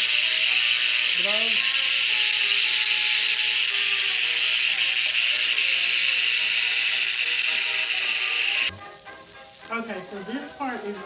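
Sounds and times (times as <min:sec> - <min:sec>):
machine buzzing hiss: 0:00.0 - 0:08.7.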